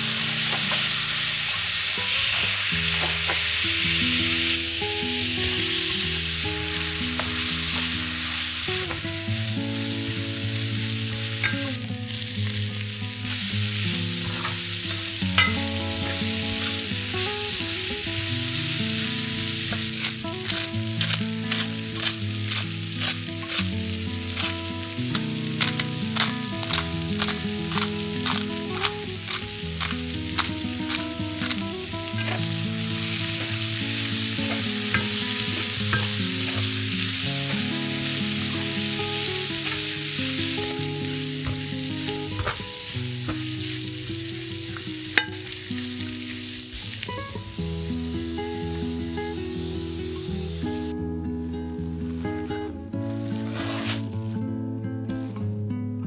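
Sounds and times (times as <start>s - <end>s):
food sizzling in hot oil: 0.0s - 54.2s
utensil tapping a pan: 24.3s - 40.0s.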